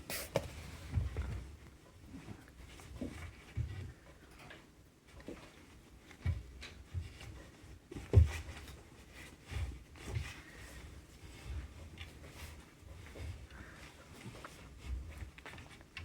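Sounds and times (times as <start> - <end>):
soft thumps and light taps: 5.1 - 16.0.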